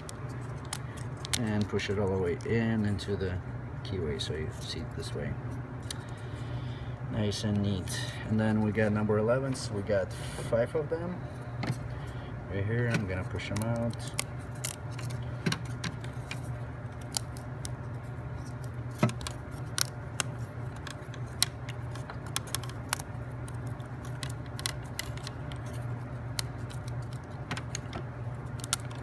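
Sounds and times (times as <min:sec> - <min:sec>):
wooden parts clicking and snapping: 0:18.9 - 0:29.0.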